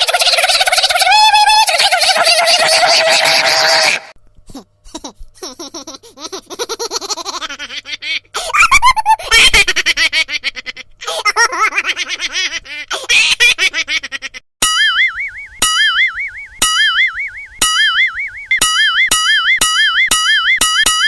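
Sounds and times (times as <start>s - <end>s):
giggling laughter ringtone: 0.0s - 4.1s.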